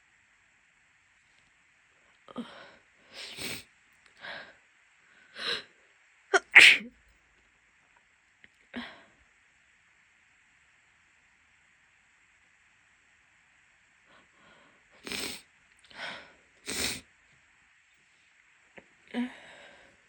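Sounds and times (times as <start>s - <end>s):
woman sneezing: 6.4s - 6.9s.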